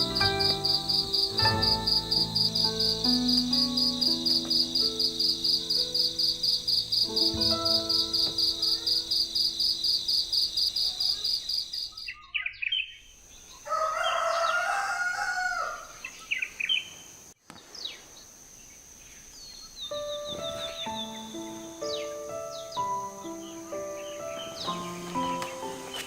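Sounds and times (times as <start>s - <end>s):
music with bird trill: 0.0s - 10.6s, 19.9s - 26.0s
bird chirps: 0.0s - 13.6s, 19.0s - 26.0s
insect chirping: 0.0s - 26.0s
rooster crowing: 13.6s - 16.1s.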